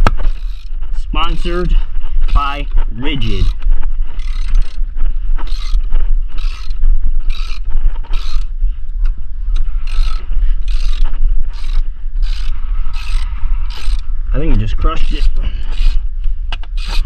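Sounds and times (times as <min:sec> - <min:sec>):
steady low rumble: 0:00.0 - 0:17.0
ratcheting pipe cutter clicking: 0:03.3 - 0:04.8, 0:05.4 - 0:08.5, 0:09.5 - 0:17.0.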